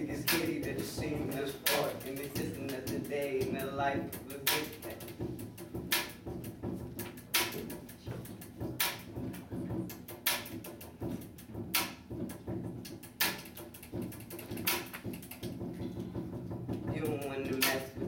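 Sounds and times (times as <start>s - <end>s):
clap-like drum hits: 0.2s - 0.6s, 4.5s - 5.0s, 9.9s - 10.9s, 11.7s - 15.6s, 17.6s - 18.0s.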